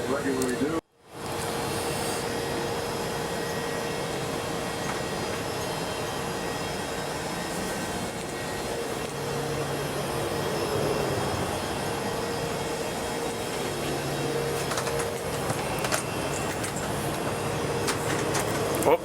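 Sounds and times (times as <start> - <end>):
cabin fans whirring: 0.0 - 19.0
lower hum: 1.2 - 19.0.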